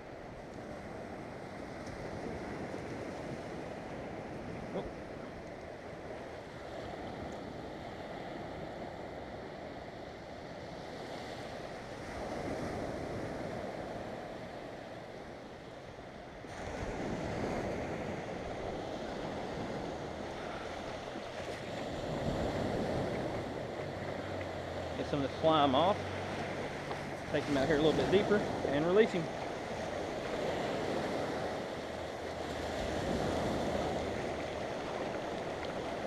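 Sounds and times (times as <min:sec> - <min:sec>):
waves breaking on beach: 0:00.0 - 0:36.0
wind on microphone: 0:16.2 - 0:36.0.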